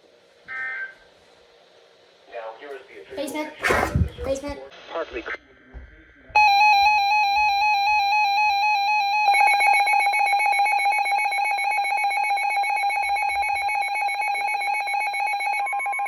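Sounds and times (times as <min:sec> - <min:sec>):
pulsing alert tone: 0:06.4 - 0:16.0
shrill two-pitch alert tone: 0:06.4 - 0:16.0.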